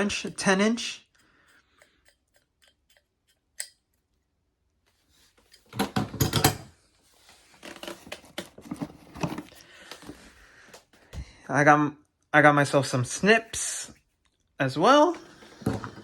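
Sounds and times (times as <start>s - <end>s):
tin snips blades clicking: 1.1s - 4.0s.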